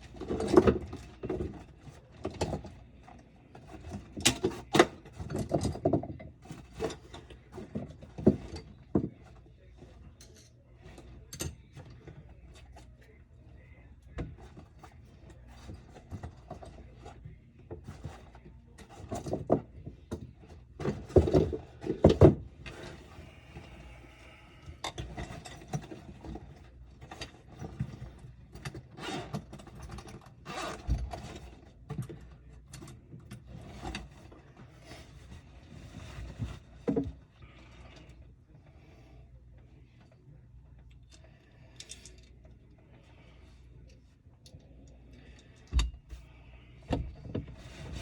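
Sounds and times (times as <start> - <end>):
tools knocking and scraping: 0.0 - 13.0, 14.0 - 38.2, 45.2 - 48.0.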